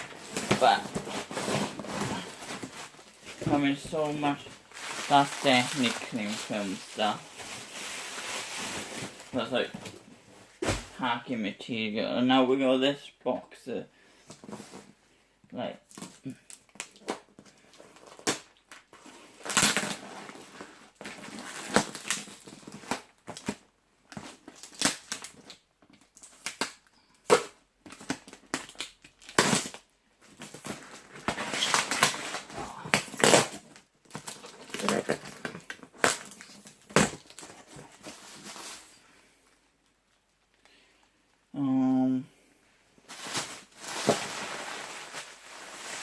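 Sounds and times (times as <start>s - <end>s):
plastic wrap crinkling: 0.0s - 11.1s, 28.0s - 39.0s, 43.1s - 46.0s.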